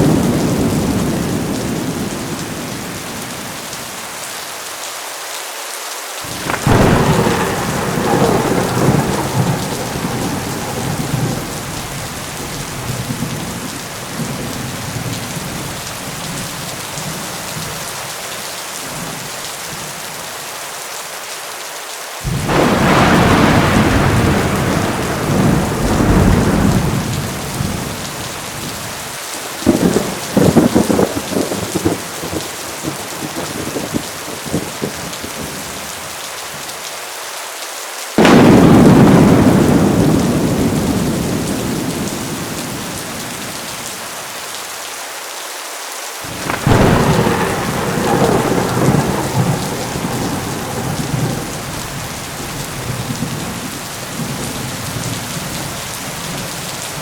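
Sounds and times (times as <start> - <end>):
thunder rumbling and cracking: 0.0 - 3.6, 6.3 - 17.9, 22.2 - 35.8, 38.2 - 43.9, 46.3 - 57.0
pouring rain: 0.0 - 57.0.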